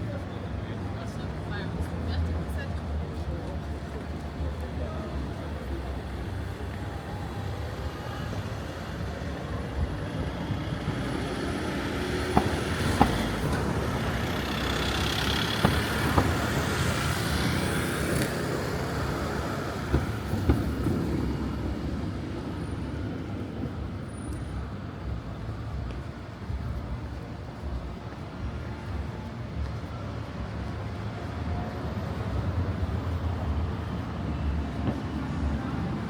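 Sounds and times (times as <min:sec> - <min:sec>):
city street traffic: 0:00.0 - 0:36.0.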